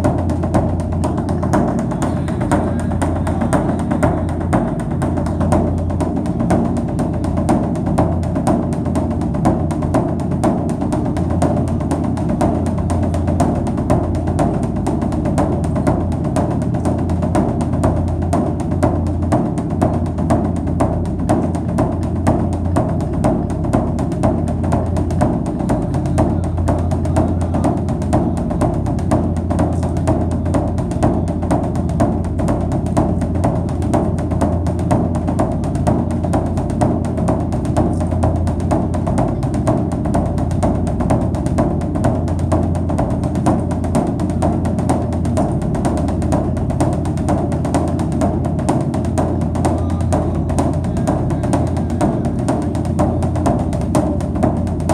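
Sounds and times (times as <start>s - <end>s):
music with rapid drum percussion: 0.0s - 54.9s.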